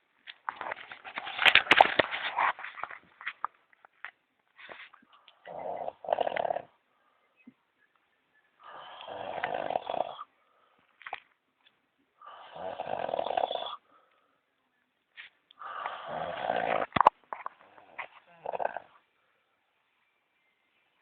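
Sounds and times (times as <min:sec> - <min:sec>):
person snoring: 0:05.5 - 0:06.7, 0:08.6 - 0:10.3, 0:12.2 - 0:13.8, 0:15.6 - 0:16.9, 0:17.8 - 0:19.0.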